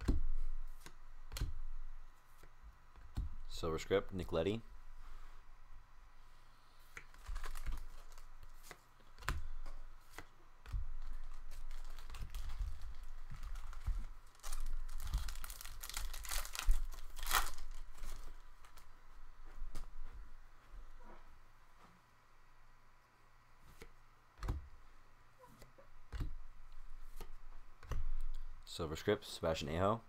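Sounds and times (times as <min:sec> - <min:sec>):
cards shuffling: 0:06.8 - 0:18.9
card packs being torn open: 0:07.1 - 0:08.6, 0:11.0 - 0:18.8
wrappers crinkling: 0:07.1 - 0:08.6, 0:11.0 - 0:18.9.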